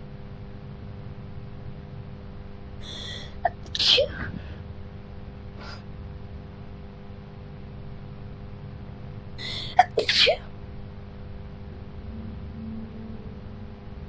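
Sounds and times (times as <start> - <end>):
woman's short in-breath: 2.8 - 3.4, 9.4 - 9.8
woman sneezing: 2.9 - 4.4, 9.4 - 10.4.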